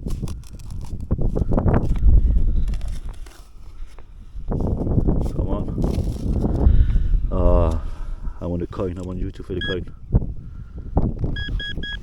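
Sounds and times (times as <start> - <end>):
digging scraping soil: 0.0 - 4.0, 4.6 - 6.8
wind on microphone: 0.0 - 12.0.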